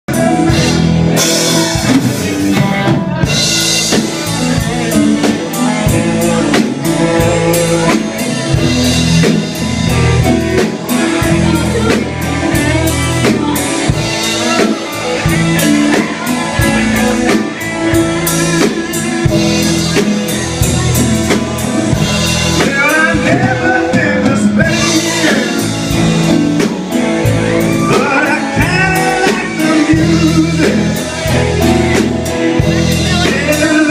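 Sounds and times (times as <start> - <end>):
live rock band playing: 0.0 - 33.9
person singing: 0.0 - 33.9.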